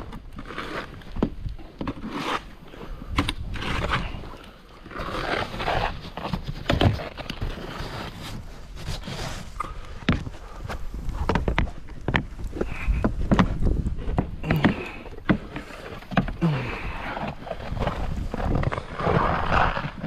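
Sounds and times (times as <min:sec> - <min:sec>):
snow being scraped and crunched: 0:00.4 - 0:01.1, 0:02.0 - 0:09.7, 0:15.6 - 0:20.0.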